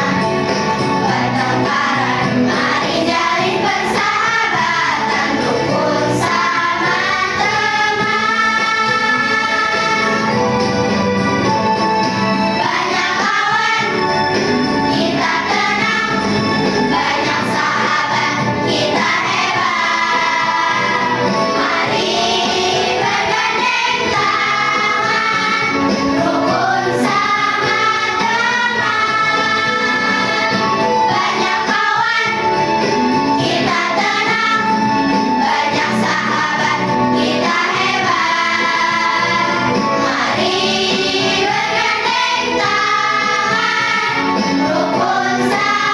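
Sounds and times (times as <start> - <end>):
children's choir singing: 0.0 - 45.9
instrumental accompaniment: 0.0 - 45.9.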